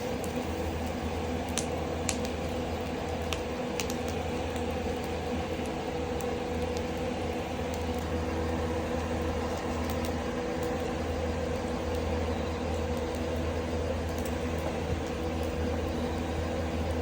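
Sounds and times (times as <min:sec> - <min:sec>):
faint firewood crackles: 0:00.0 - 0:17.0
ventilation fan humming: 0:00.0 - 0:17.0.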